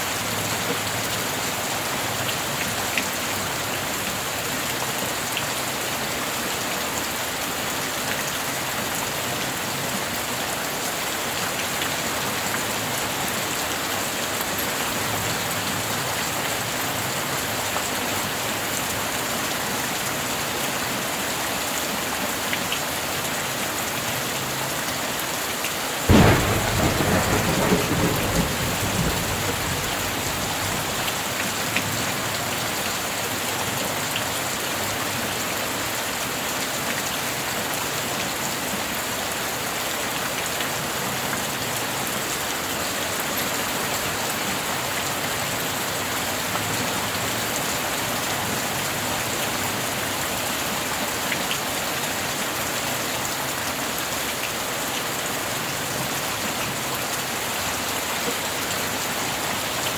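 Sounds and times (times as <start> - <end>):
heavy rain: 0.0 - 59.9
thunder crack and rumble: 26.1 - 32.2.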